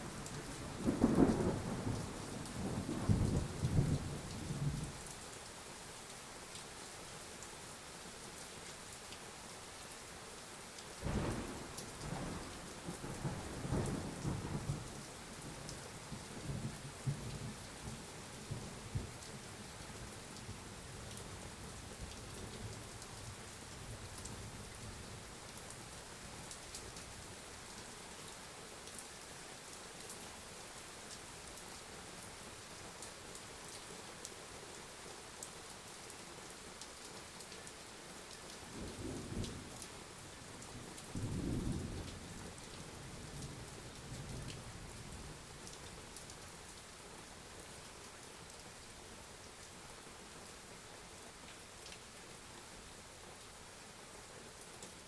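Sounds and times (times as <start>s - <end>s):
rain falling: 0.0s - 55.0s.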